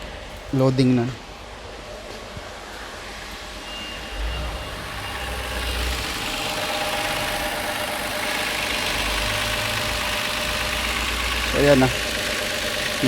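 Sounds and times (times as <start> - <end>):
car engine idling with misfire: 4.2 - 13.0.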